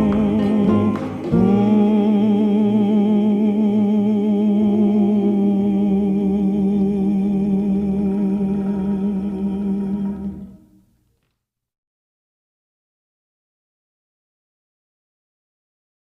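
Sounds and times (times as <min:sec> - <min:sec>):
person singing a long note: 0:00.0 - 0:10.8.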